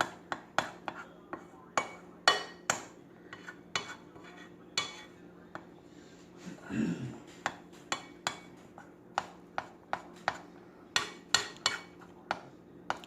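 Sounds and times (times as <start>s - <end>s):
spoon clinking against bowl: 1.8s - 2.9s, 11.0s - 12.0s.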